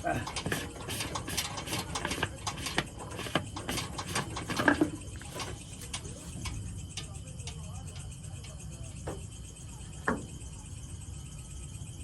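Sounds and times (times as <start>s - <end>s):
objects clicking and knocking: 0.0s - 7.1s.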